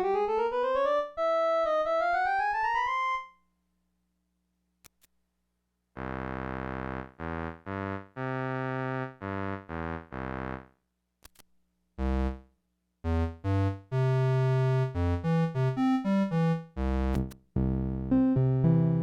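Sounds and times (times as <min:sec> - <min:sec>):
electronic keyboard playing chords: 0:06.0 - 0:10.7, 0:13.1 - 0:19.0.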